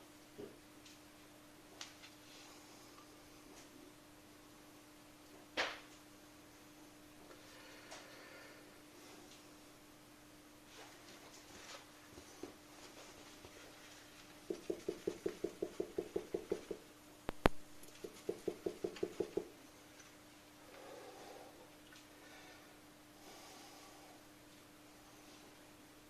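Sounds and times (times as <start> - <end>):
faint steady hum: 0.0 - 26.0
shock absorber knocking: 14.5 - 16.8, 18.0 - 19.5.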